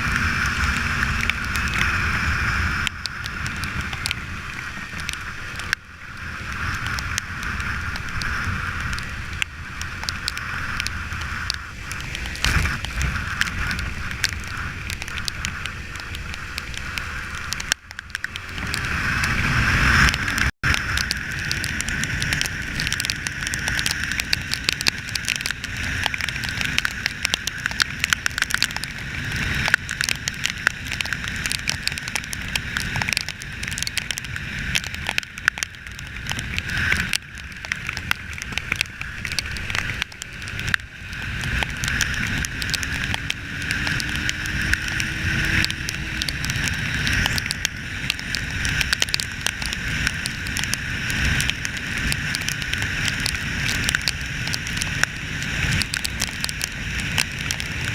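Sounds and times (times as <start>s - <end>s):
motorcycle engine: 0.0s - 26.9s, 39.8s - 52.3s
wind rushing over microphone: 0.0s - 57.9s.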